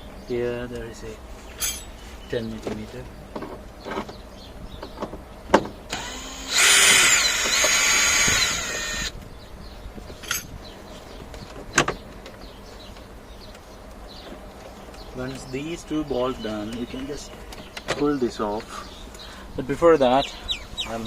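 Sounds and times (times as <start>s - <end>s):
power tool motor whining: 5.9s - 9.1s.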